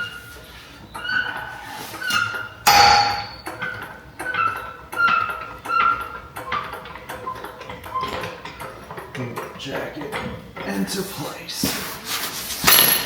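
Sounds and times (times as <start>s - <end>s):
metallic clinks and squeaks: 0.0s - 6.3s
loud metal clank: 2.7s - 3.8s.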